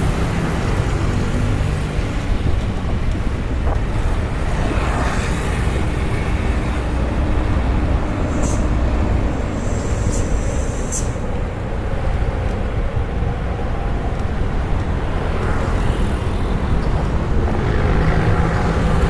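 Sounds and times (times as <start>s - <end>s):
road traffic noise: 0.0s - 19.0s
wind rumble on microphone: 0.0s - 19.0s.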